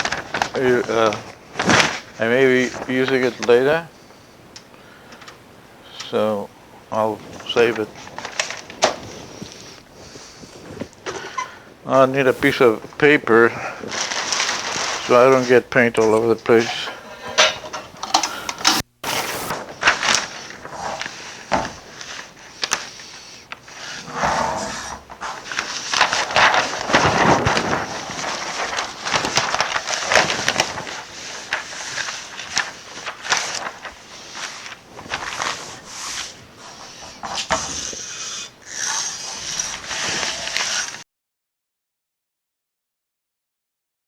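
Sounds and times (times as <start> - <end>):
paper rustling: 0.0 - 4.1, 6.9 - 24.0, 25.1 - 41.0
spray can hissing: 16.6 - 19.5.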